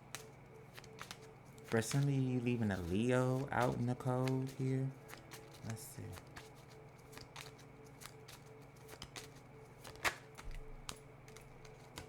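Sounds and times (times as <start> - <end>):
cards clicking and flicking: 0.0 - 12.0
sharp card snap: 8.9 - 11.0.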